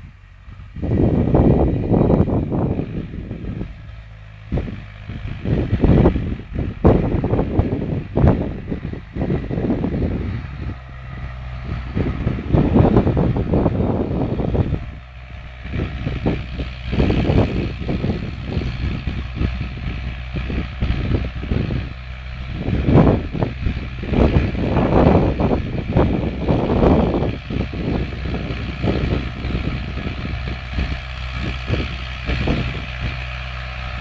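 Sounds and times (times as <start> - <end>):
tractor diesel engine under load: 0.0 - 34.0
wind noise on microphone: 0.0 - 34.0.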